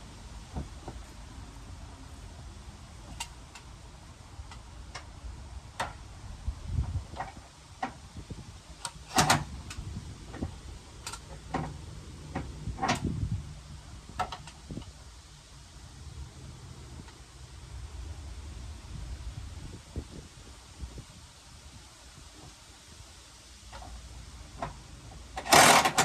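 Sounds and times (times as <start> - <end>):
hand tools clicking and knocking: 25.4 - 26.0
loud clatter: 25.4 - 26.0.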